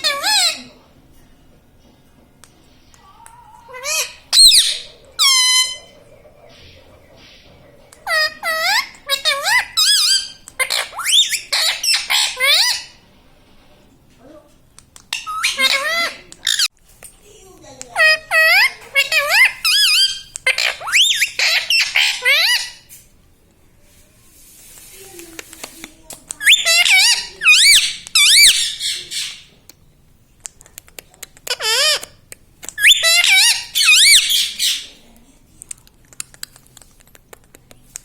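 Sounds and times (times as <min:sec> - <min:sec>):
parrot chattering: 0:00.0 - 0:00.7, 0:03.3 - 0:06.8, 0:07.4 - 0:13.0, 0:15.1 - 0:16.7, 0:17.8 - 0:22.9, 0:26.3 - 0:29.5, 0:30.4 - 0:35.0.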